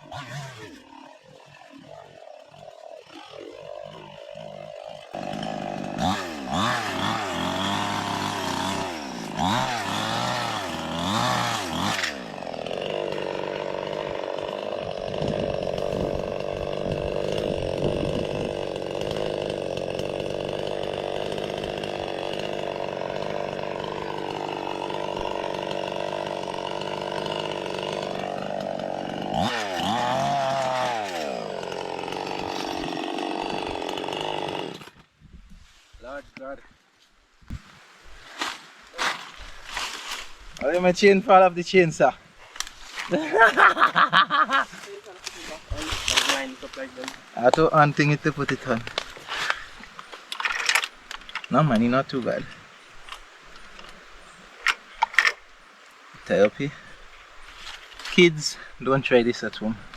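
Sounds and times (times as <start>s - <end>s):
chainsaw engine revving: 0.0s - 35.0s, 43.1s - 49.7s.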